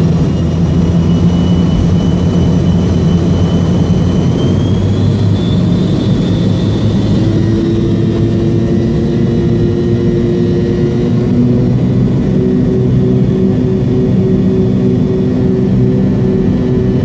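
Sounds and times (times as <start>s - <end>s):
jet engines at takeoff thrust: 0.0s - 17.0s.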